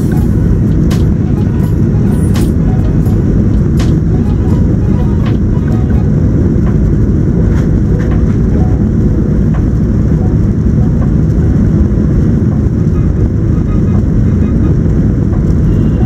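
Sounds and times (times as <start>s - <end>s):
airliner cabin rumble: 0.0s - 16.0s.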